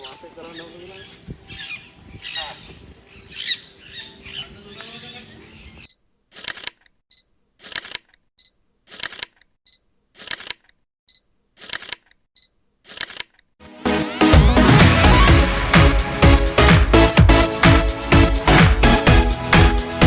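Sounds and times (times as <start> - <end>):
birds squawking: 0.0 - 5.9
camera shutter: 6.3 - 6.9, 7.6 - 8.2, 8.9 - 9.4, 10.2 - 10.7, 11.6 - 12.2, 12.8 - 13.4.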